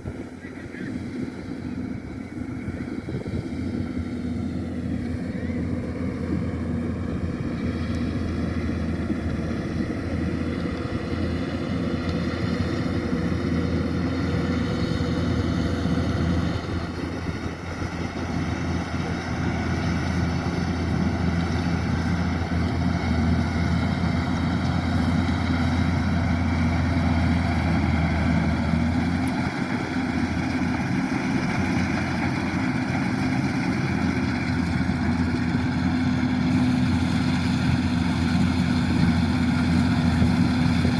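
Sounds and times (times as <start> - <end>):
combine harvester diesel engine: 0.0 - 40.9.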